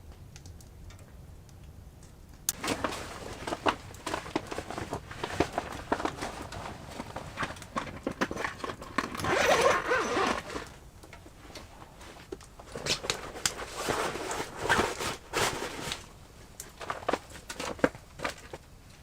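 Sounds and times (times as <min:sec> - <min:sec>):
short rustles: 0:02.6 - 0:17.5.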